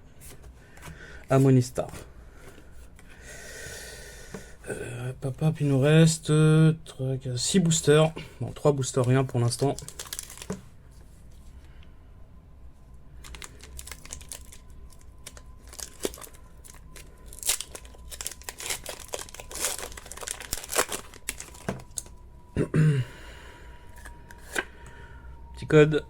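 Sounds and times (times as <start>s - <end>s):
foil wrapper tearing and crinkling: 9.0s - 10.6s, 13.2s - 22.2s.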